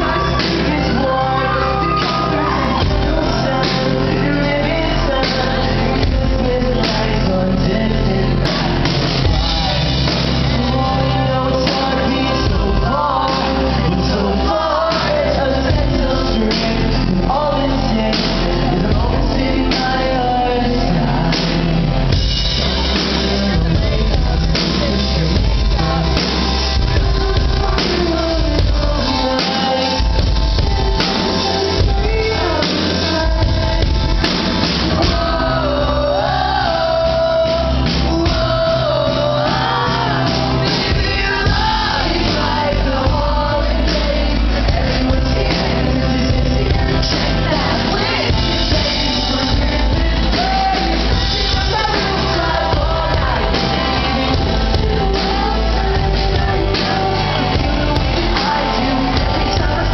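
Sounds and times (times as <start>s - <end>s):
live band playing: 0.0s - 59.9s
man singing: 0.0s - 59.9s
drum beat: 8.4s - 10.7s, 21.6s - 59.9s.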